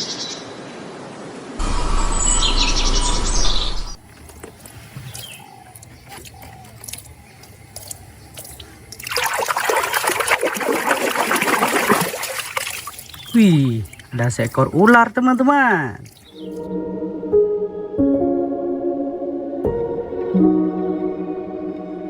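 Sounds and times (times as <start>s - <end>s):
birds chirping: 1.6s - 10.1s, 11.2s - 16.7s
water running and splashing: 4.0s - 16.6s.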